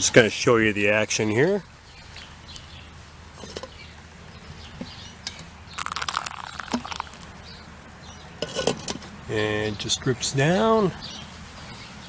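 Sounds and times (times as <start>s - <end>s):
coffee dripping into cup: 5.8s - 7.3s.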